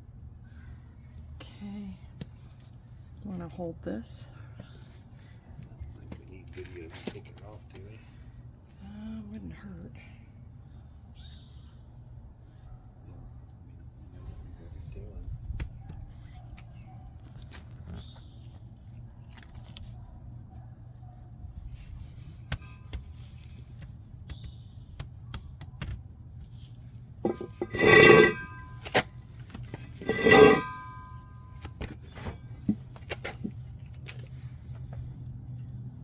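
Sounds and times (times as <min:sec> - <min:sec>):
metallic rattles: 0:27.2 - 0:31.3
metal tools clinking: 0:27.3 - 0:29.1, 0:29.8 - 0:31.3.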